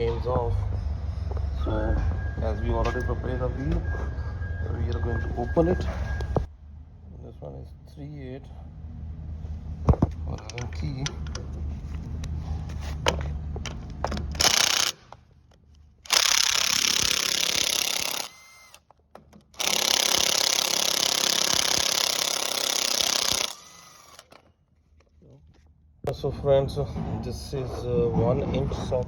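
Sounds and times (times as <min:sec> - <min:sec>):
impact wrench hammering: 0:13.1 - 0:15.1, 0:16.1 - 0:18.4, 0:19.2 - 0:24.4.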